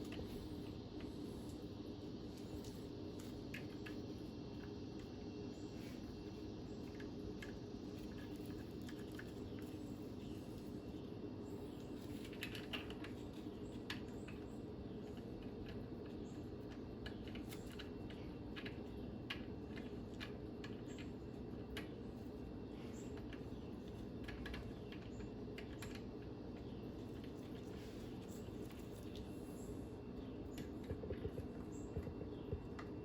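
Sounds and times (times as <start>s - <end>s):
low background hum: 0.0s - 33.0s
clicks and taps of nuts: 30.5s - 33.0s.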